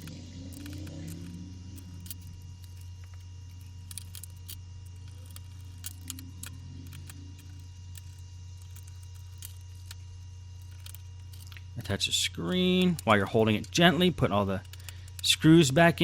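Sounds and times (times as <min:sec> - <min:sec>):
clicks of small parts handled: 0:00.0 - 0:10.0
low electrical hum: 0:00.0 - 0:16.0.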